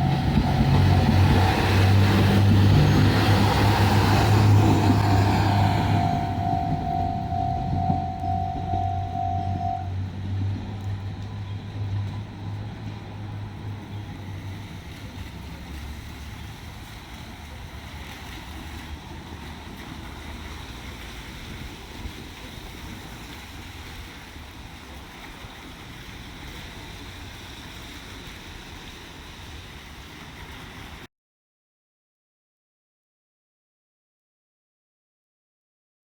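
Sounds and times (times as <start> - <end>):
steady rushing noise: 0.0 - 10.0
diesel train engine rumble: 0.0 - 31.1.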